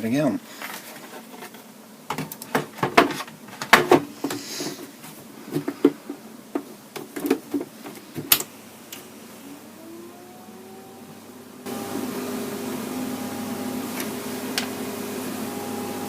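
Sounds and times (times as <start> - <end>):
faint rising tone: 9.4 - 13.9.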